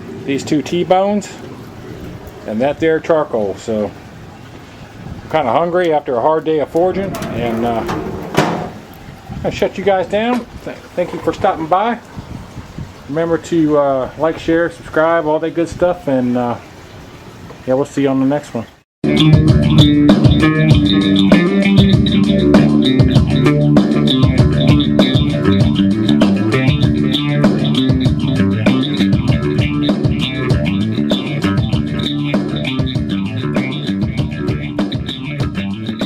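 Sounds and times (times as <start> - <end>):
rock music with bass and guitar: 19.0 - 36.0.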